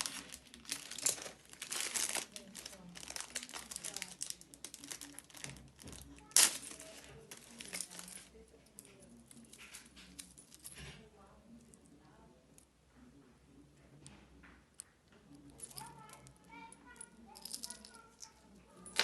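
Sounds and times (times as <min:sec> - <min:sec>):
packaging rustling: 0:00.0 - 0:08.3.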